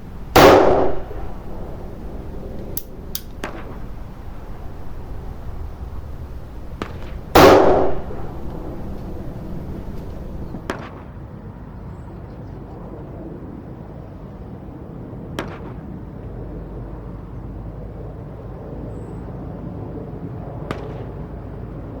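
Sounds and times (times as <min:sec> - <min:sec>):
low rumble: 0:00.0 - 0:10.7
faint sharp gunshot crack: 0:00.0 - 0:10.9.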